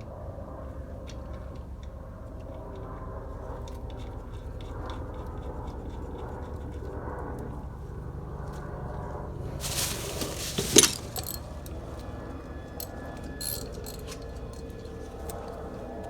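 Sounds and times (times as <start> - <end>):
wrench clicking: 13.4 - 14.0.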